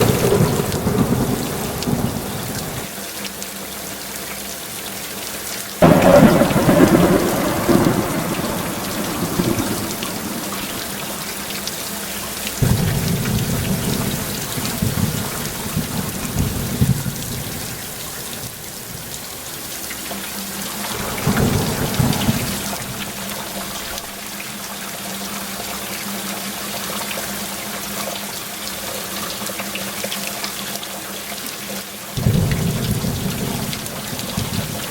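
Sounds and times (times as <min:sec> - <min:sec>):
thunder rumbling: 0:00.0 - 0:02.9, 0:05.8 - 0:19.4, 0:20.9 - 0:24.2, 0:32.2 - 0:34.9
heavy rain: 0:00.0 - 0:34.9.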